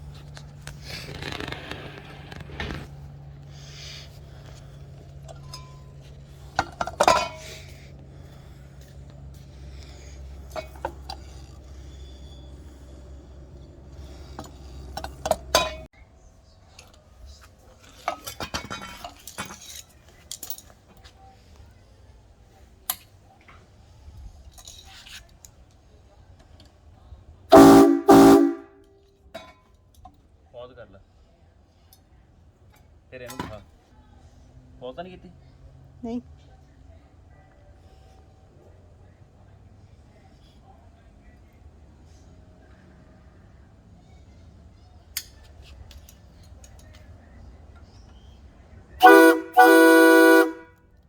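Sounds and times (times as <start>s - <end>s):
loud train horn blasts: 27.5s - 28.9s, 49.0s - 50.8s.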